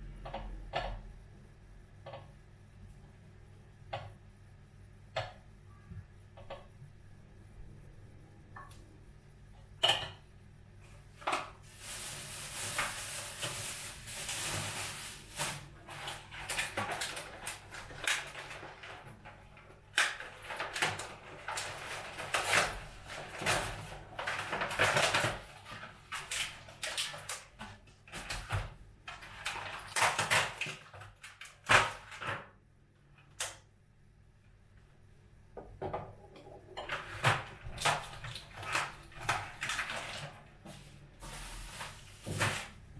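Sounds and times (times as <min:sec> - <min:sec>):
rustling or hissing noise: 0:10.8 - 0:18.5, 0:37.8 - 0:42.9.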